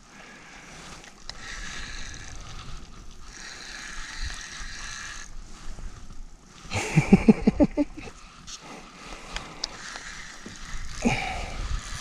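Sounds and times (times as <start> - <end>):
fishing reel drag buzzing: 0.0 - 12.0.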